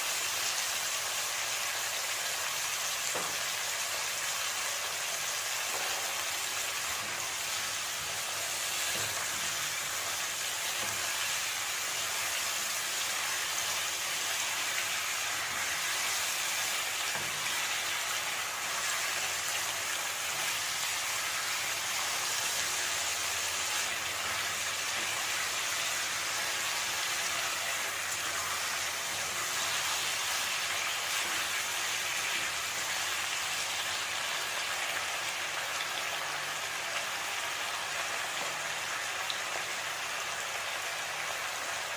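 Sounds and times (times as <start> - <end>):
food sizzling in hot oil: 0.0 - 41.9.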